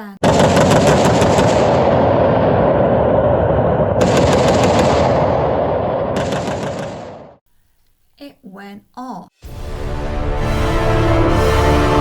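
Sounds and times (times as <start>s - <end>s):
machine-gun fire: 0.2s - 7.4s.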